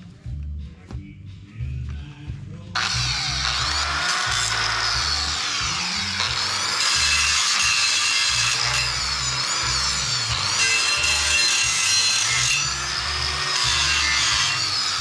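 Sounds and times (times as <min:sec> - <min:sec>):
background music with bass beat: 0:00.0 - 0:06.7
power tool hissing on steel: 0:02.8 - 0:15.0.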